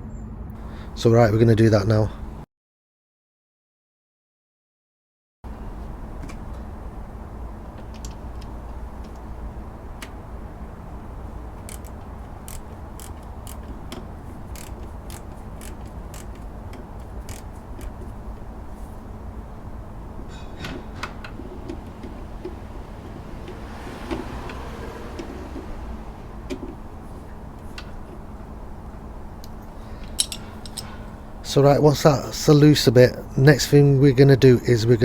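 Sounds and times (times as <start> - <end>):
steady low hum: 0.0 - 2.4, 5.5 - 35.0
wrench clicking: 11.6 - 18.0, 29.4 - 31.0
metal clinks: 30.0 - 31.2.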